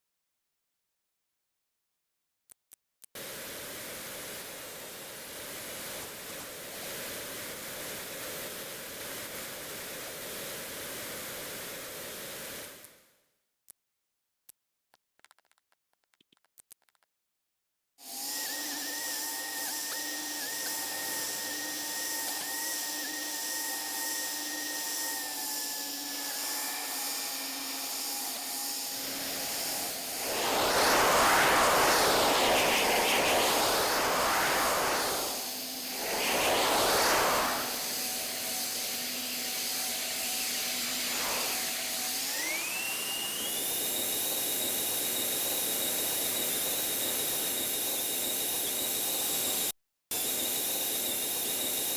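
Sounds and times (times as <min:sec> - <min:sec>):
airplane engine humming: 0:28.8 - 0:39.3
loud surging whooshes: 0:28.9 - 0:38.7.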